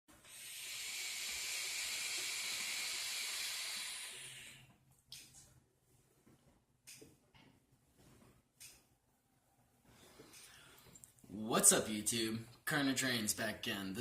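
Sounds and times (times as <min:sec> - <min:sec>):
steady airy hiss: 0:00.1 - 0:04.7.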